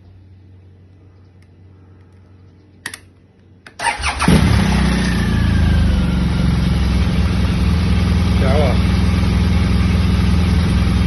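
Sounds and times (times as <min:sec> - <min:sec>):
motorcycle starter cranking: 0:03.8 - 0:05.2
motorcycle engine idling: 0:03.8 - 0:11.0.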